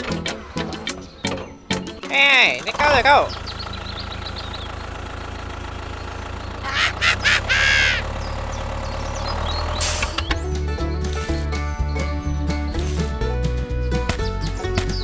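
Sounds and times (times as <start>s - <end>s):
squeaky quack-like calls: 6.6s - 8.1s
brief hiss: 9.8s - 10.4s.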